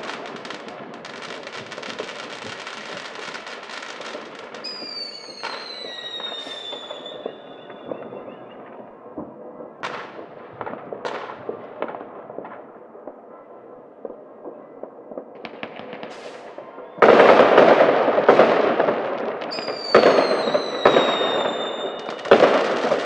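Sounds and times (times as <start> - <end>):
firecrackers crackling: 0.0 - 13.3, 14.0 - 23.0
firework bangs: 0.0 - 13.3, 14.0 - 23.0
whistling firework: 0.0 - 23.0.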